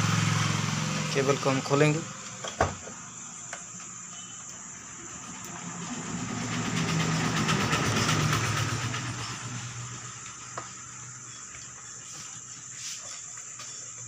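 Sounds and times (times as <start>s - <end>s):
passing vehicle rattling and rumbling: 0.0s - 3.0s, 4.8s - 11.4s.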